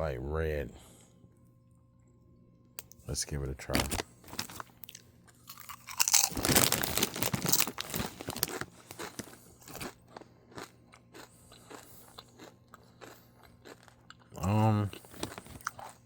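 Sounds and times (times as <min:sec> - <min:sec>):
chips being chewed crunchily: 0:03.7 - 0:16.0.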